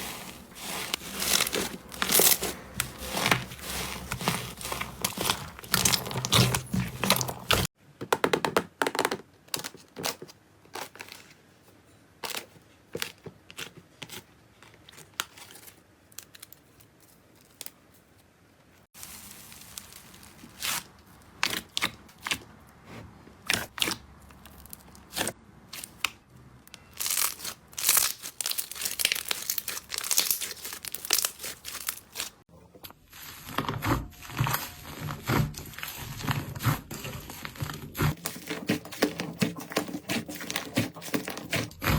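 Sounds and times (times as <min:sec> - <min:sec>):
slime crackling and popping: 0:00.0 - 0:07.7, 0:27.0 - 0:32.4.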